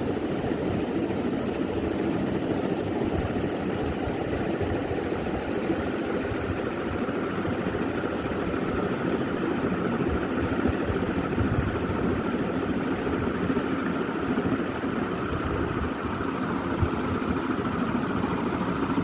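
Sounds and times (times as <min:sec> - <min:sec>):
vehicle engine running steadily: 0:00.0 - 0:19.0.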